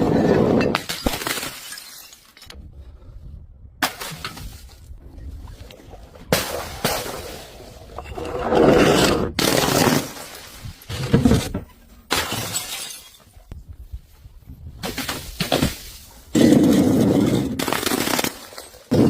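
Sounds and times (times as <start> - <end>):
glass bottles shattering: 0.6 - 2.6, 12.1 - 13.4
glass crunching and tinkling: 0.7 - 2.6, 12.1 - 13.5.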